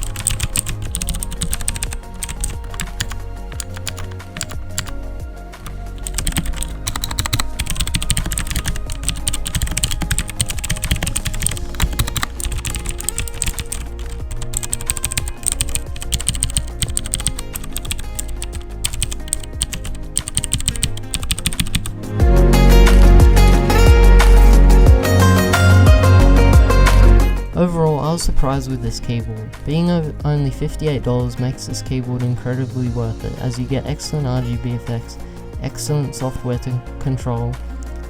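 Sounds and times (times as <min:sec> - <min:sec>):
mechanical keyboard typing: 0:00.0 - 0:05.0, 0:05.6 - 0:22.0
background music: 0:00.0 - 0:38.0.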